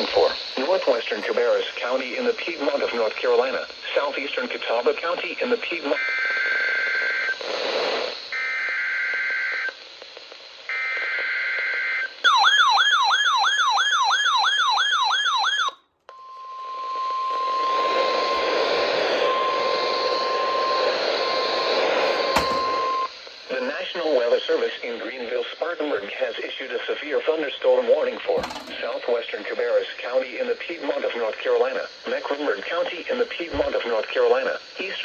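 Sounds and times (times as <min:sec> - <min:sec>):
radio hiss: 0:00.0 - 0:12.2, 0:17.2 - 0:35.0
steady warning alarm tone: 0:12.3 - 0:23.2, 0:28.4 - 0:29.0
warbling alarm tone: 0:22.2 - 0:23.1.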